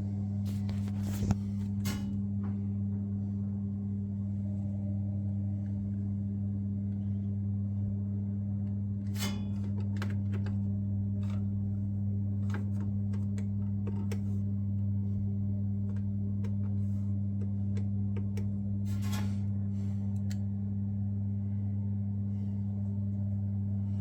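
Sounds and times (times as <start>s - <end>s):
low electrical motor hum: 0.0s - 24.0s.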